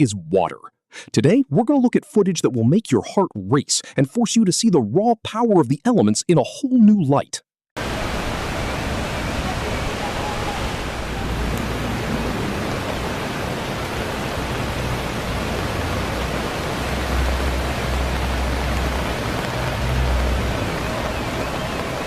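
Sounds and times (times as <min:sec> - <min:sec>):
rushing water: 0:07.8 - 0:22.0.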